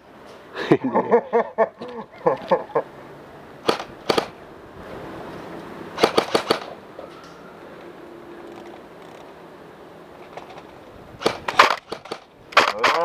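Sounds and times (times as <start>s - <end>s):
airsoft guns firing: 3.6s - 4.3s, 6.0s - 6.8s, 11.2s - 13.0s.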